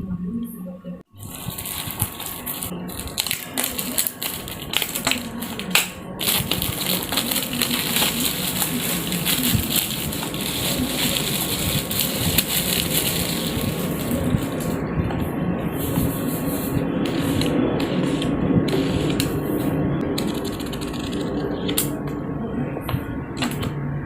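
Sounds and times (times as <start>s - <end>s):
packaging crinkling: 1.2s - 14.8s.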